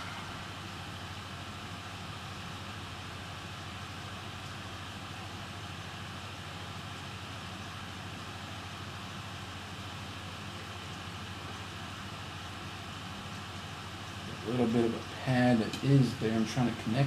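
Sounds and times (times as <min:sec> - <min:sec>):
background hiss: 0:00.0 - 0:02.8
low hum: 0:00.0 - 0:03.8.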